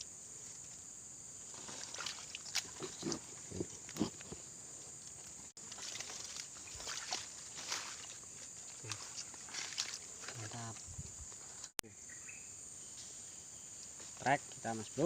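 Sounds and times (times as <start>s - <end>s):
night insects chorus: 0.0s - 15.0s
low grunt-like sounds: 2.7s - 4.4s.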